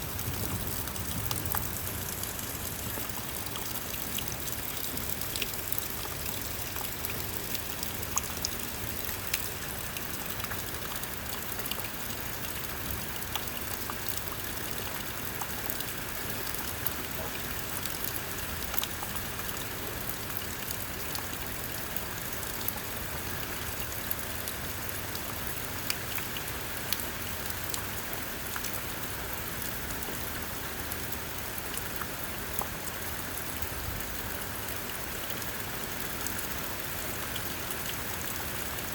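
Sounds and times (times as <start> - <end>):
heavy rain falling: 0.0 - 6.6.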